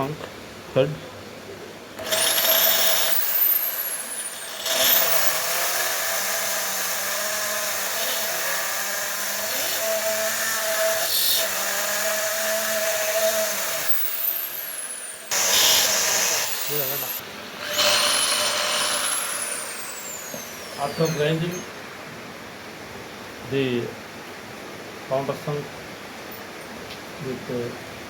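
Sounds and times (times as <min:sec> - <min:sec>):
electric drill grinding metal: 0:02.0 - 0:21.8.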